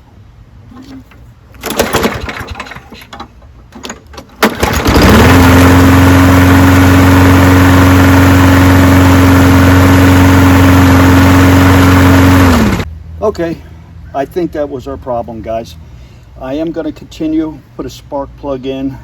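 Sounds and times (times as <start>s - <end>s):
clattering: 0.7s - 4.8s
lawn mower engine running: 0.7s - 12.9s.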